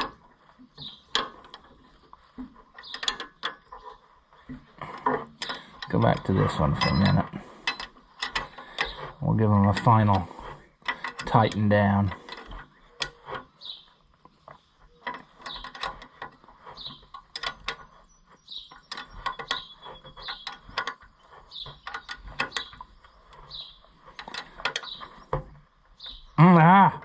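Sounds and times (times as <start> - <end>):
wrench clicking on bolts: 2.7 - 3.9, 5.0 - 13.7, 14.9 - 25.2.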